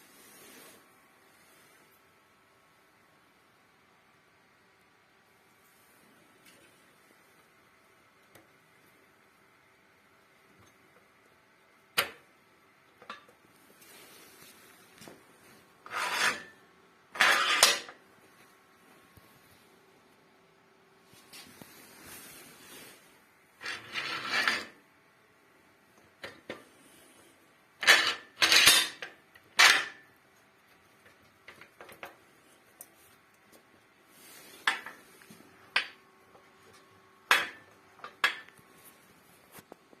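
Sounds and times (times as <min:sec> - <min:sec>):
metal parts clanking and scraping: 0:15.8 - 0:16.6, 0:17.2 - 0:18.0, 0:23.6 - 0:24.8, 0:27.8 - 0:30.0.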